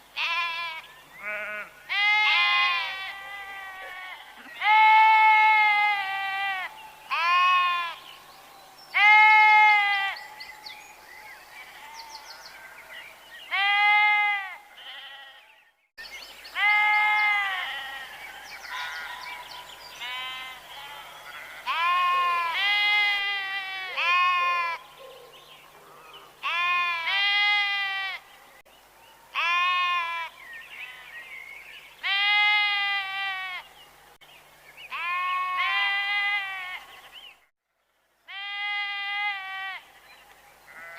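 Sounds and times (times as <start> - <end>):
sheep bleating: 0.2 - 8.0, 9.0 - 10.3, 13.5 - 15.5, 16.6 - 18.2, 20.0 - 24.8, 26.4 - 28.2, 29.4 - 30.3, 32.0 - 33.6, 34.9 - 37.2, 38.3 - 40.0, 40.7 - 40.9.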